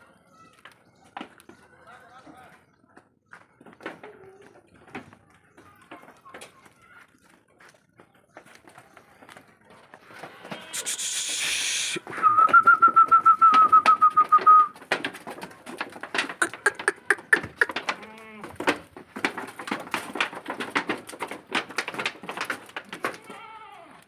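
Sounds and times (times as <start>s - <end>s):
goat bleating: 10.2s - 12.0s, 16.4s - 18.5s, 23.1s - 24.0s
brief hiss: 10.7s - 12.1s
sharp clicks and knocks: 12.0s - 23.3s.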